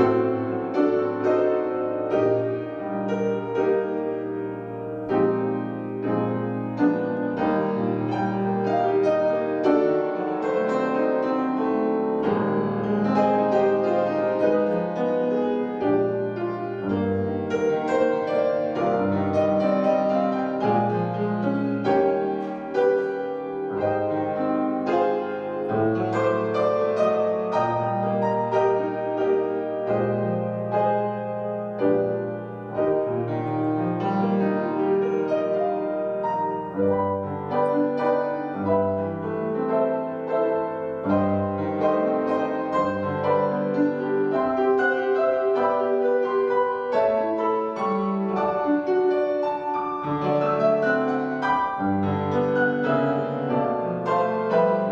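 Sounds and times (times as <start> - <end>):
slow piano chords with melody: 0.0 - 54.9.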